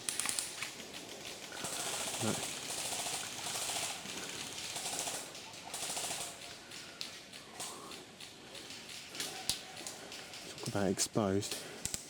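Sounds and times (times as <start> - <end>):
airsoft guns firing bursts: 0.0 - 6.9.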